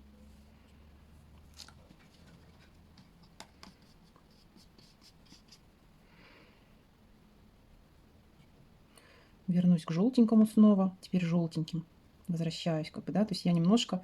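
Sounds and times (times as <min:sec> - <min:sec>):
paintbrush strokes on paper: 0:01.9 - 0:05.7.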